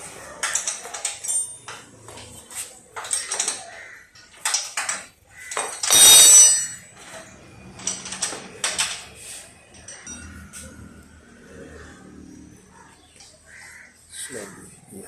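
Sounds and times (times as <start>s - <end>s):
metal tools clinking: 0.2s - 11.0s
rasping ringing burst: 5.8s - 7.0s.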